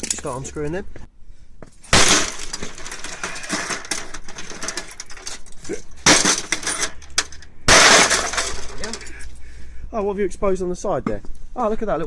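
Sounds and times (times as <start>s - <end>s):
clattering scraping and clicks: 1.9s - 9.2s.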